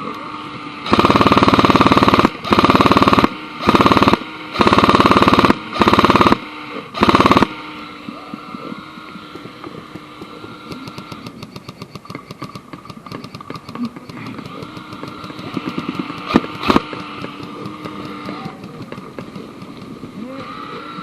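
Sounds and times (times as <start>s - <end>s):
airsoft rifle bursts: 0.9s - 7.7s, 10.6s - 19.8s.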